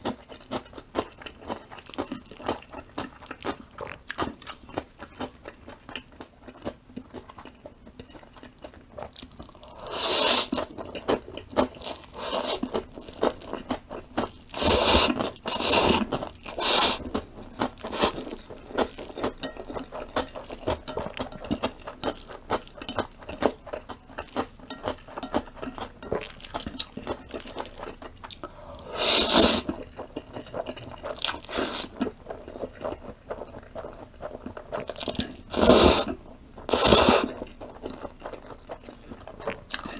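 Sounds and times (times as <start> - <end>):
wet chewing clicks: 0.0 - 39.9
noodles slurping: 9.6 - 10.7, 11.6 - 19.3, 28.5 - 29.9, 34.9 - 37.4.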